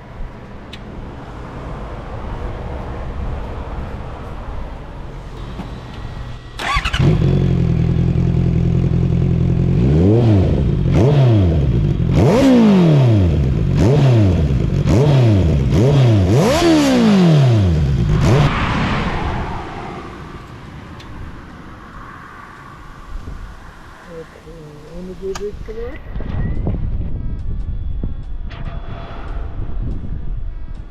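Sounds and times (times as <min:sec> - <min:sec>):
motorcycle engine revving: 0:05.8 - 0:18.7
motorcycle engine idling: 0:06.6 - 0:09.9.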